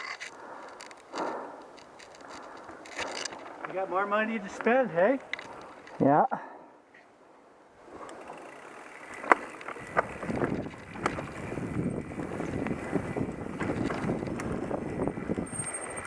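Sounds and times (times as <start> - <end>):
bike rattling over bumps: 7.8 - 16.0
tyre and wind noise: 7.8 - 16.0.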